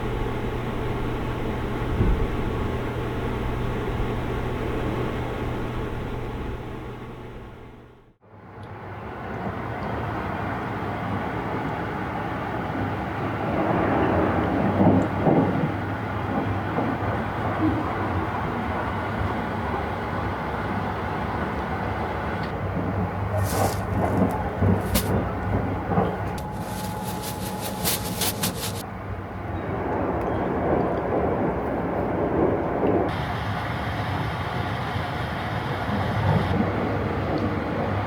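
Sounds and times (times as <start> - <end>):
train wheels rumbling on rail: 13.5 - 20.7, 22.5 - 28.8.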